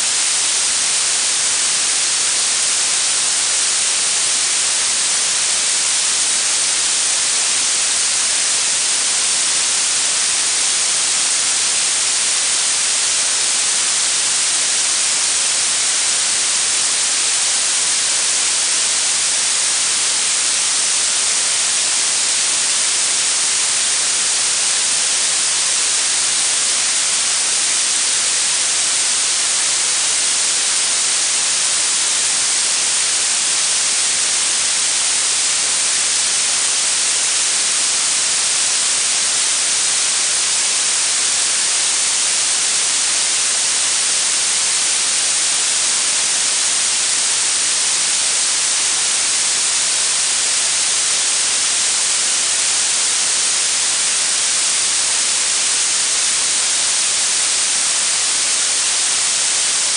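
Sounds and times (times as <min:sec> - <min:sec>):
blue noise hiss: 0:00.0 - 0:59.9.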